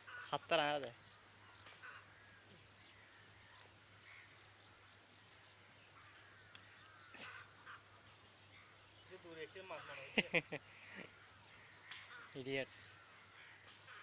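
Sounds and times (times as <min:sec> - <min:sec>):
distant bird chirps: 0:00.0 - 0:14.0.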